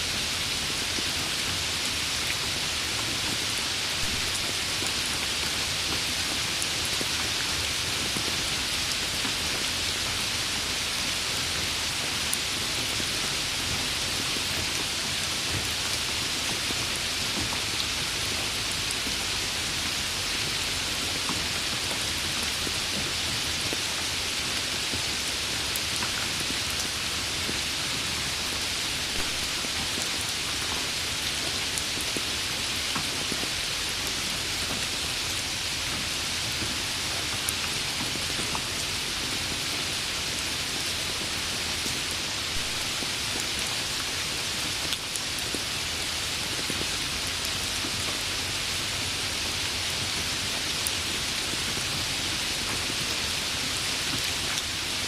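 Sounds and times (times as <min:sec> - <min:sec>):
steady rain hiss: 0:00.0 - 0:55.0.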